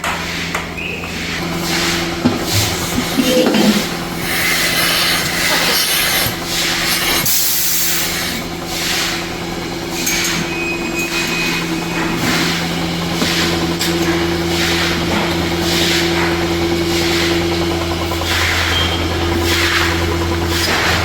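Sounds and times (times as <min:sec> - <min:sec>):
milking machinery humming: 0:00.0 - 0:21.0
rhythmic hissing rubbing noise: 0:02.1 - 0:08.4.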